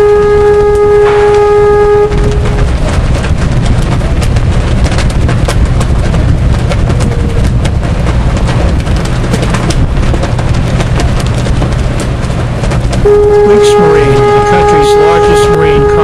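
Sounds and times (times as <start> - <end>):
horn blast: 0.0 - 3.0, 13.0 - 16.0
crackles: 0.0 - 16.0
wind buffeting microphone: 0.0 - 16.0.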